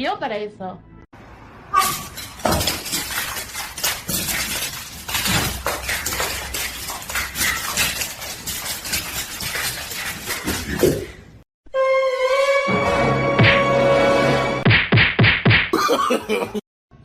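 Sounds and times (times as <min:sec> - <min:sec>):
glass breaking: 0:01.8 - 0:03.4
clattering and crashing: 0:01.8 - 0:10.9.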